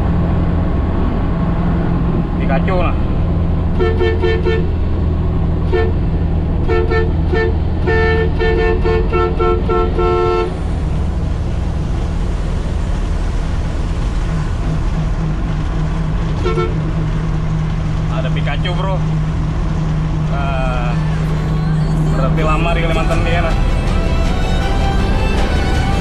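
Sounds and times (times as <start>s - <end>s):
diesel truck engine drone: 0.0s - 26.0s
two-tone vehicle horn toots: 3.7s - 4.8s, 5.6s - 10.6s, 16.4s - 16.9s.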